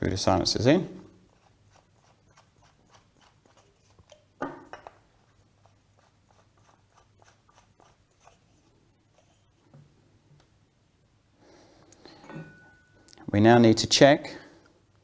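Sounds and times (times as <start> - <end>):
faint clicks and scrapes of screwing: 1.2 - 10.5.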